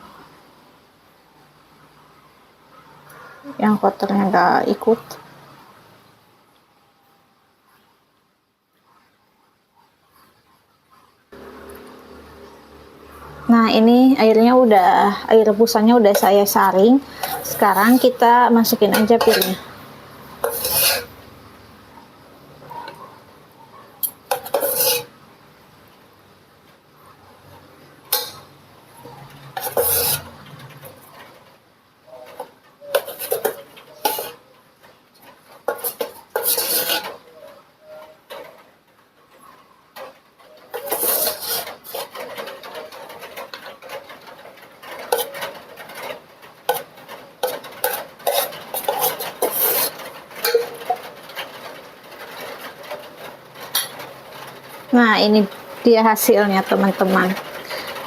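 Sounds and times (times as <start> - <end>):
dishware clinking and scraping: 15.0 - 21.4, 24.0 - 25.2, 28.1 - 31.4, 32.1 - 34.5, 35.2 - 38.6, 40.0 - 54.8.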